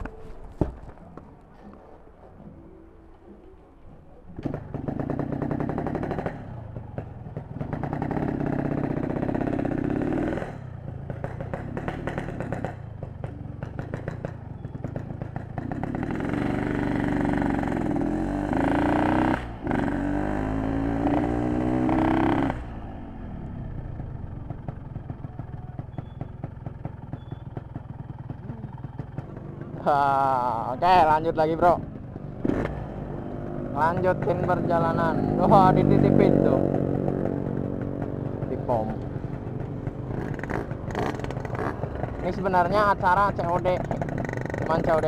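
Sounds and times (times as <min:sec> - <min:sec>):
motorcycle engine revving and idling: 0:04.3 - 0:45.0.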